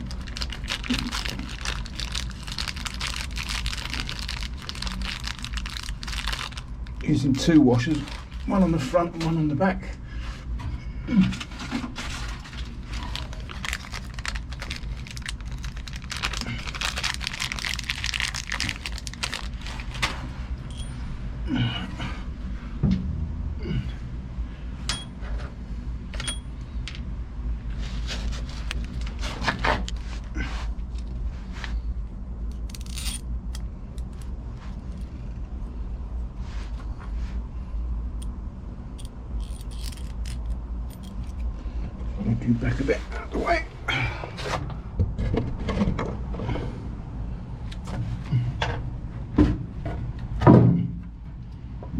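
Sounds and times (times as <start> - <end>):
small metal parts clinking: 0.0 - 7.1, 12.4 - 19.8, 32.5 - 34.3, 39.0 - 41.5
low hum: 0.0 - 51.9.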